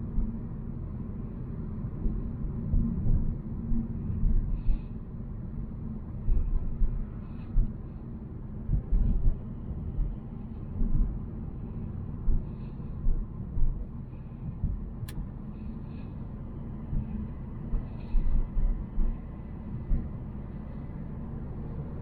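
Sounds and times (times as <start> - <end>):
car rumbling on road: 6.3 - 22.0.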